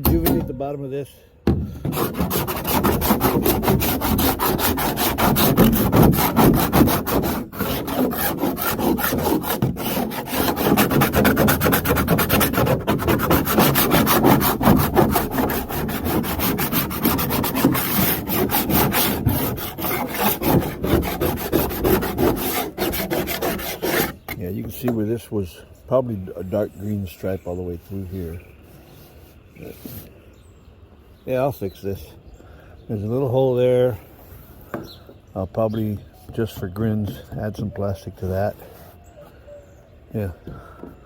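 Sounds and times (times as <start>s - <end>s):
abrasive tool scraping plastic: 1.5s - 25.0s.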